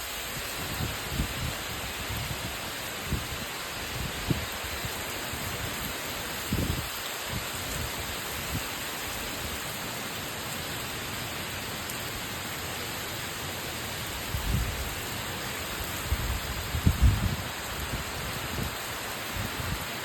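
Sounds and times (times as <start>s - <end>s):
wind gusting on microphone: 0.0s - 8.7s, 14.2s - 20.0s
heavy rain hissing: 0.0s - 20.0s.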